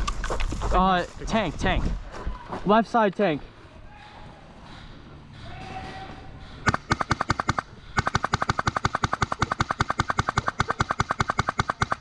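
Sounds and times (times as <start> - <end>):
airsoft rifle firing: 6.6 - 12.0.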